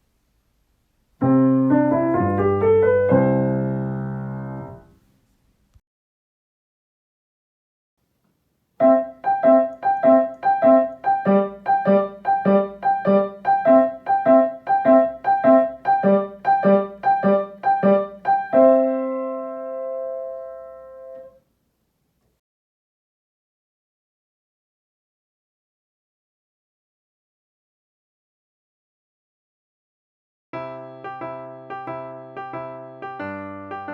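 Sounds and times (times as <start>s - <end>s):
piano playing bouncy chords: 1.2s - 4.9s, 8.8s - 21.4s, 30.6s - 33.9s.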